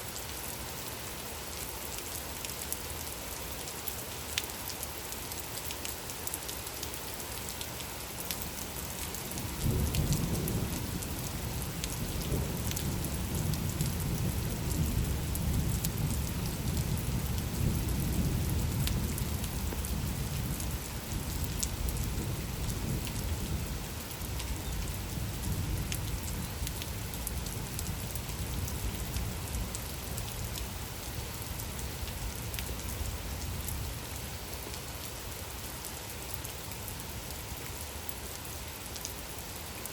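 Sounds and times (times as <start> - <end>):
steady rain falling: 0.0 - 39.9
thunder rumbling: 9.4 - 23.7.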